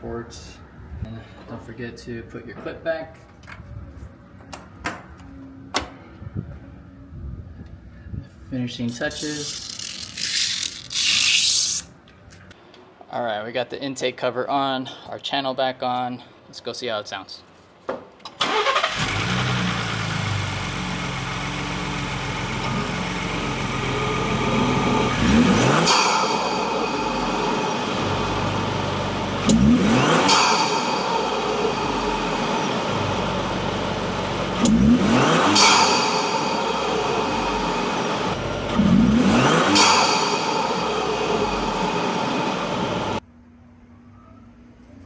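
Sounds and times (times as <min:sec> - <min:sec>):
car engine idling and revving: 0:18.4 - 0:43.2.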